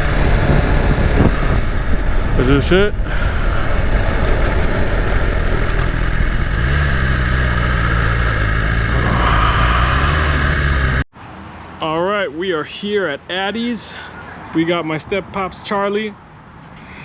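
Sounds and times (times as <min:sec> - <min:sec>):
motorcycle engine idling: 0:00.0 - 0:11.0
wind rumbling on microphone: 0:00.0 - 0:11.0.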